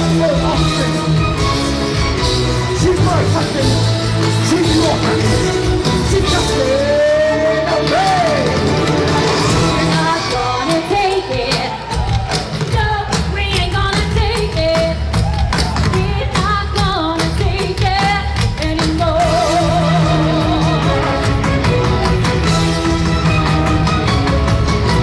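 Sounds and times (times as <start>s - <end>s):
bass line: 0.0s - 11.2s
rock pop song with singer: 0.0s - 24.3s.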